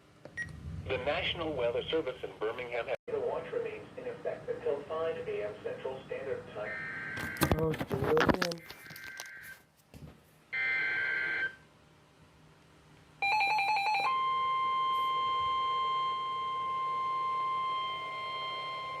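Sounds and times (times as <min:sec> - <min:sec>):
steady warning alarm tone: 0:06.6 - 0:07.4, 0:10.6 - 0:11.6, 0:13.2 - 0:19.0.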